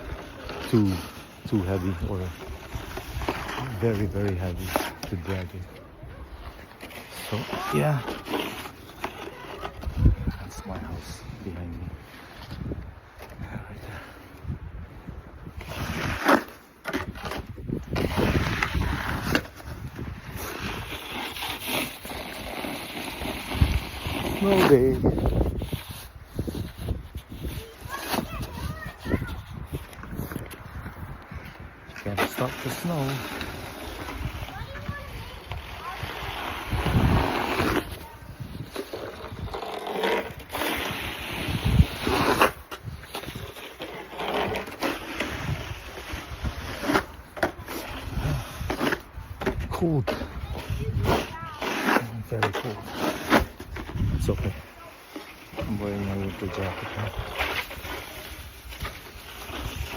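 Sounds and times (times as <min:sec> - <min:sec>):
snow shovel scraping snow: 0:00.0 - 0:14.0, 0:15.5 - 0:59.9
wind buffeting microphone: 0:09.7 - 0:16.2, 0:17.0 - 0:21.0, 0:23.4 - 0:32.0, 0:33.4 - 0:39.6, 0:40.2 - 0:43.6, 0:45.2 - 0:51.6, 0:53.4 - 0:54.8.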